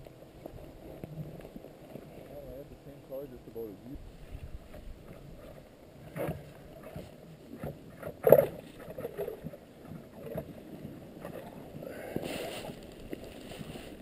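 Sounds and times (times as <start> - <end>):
fishing gear knocks and rustles: 4.6 - 14.0.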